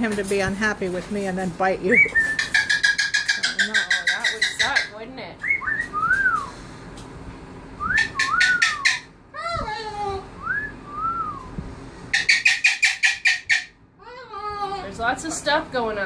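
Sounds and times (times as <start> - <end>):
parrot whistling: 1.9 - 6.5, 7.8 - 9.1, 10.4 - 11.5, 12.1 - 13.8.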